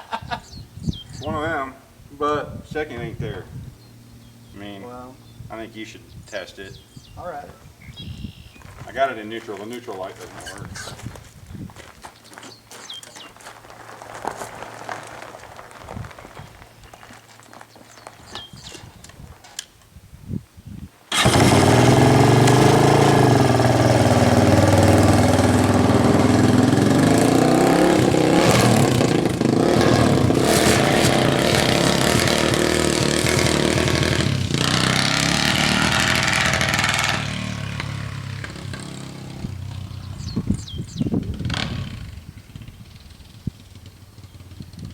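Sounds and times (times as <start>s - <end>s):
quad engine running: 21.1s - 44.9s.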